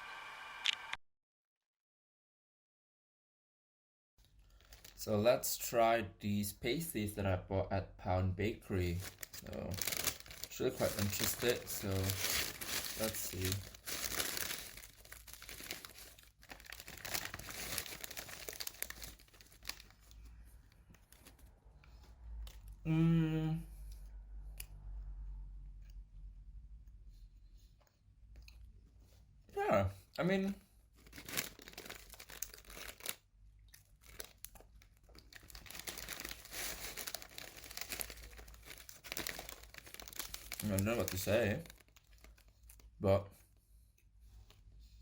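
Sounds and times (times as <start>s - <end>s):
food packaging crinkling: 4.2s - 5.1s, 8.8s - 22.7s, 30.9s - 43.0s.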